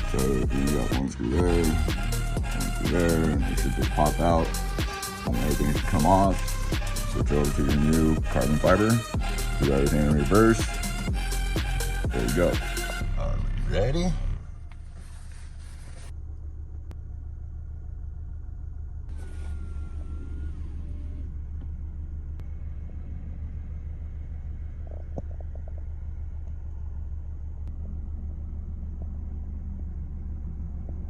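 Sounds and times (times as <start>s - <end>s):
car engine rumble: 0.0s - 31.0s.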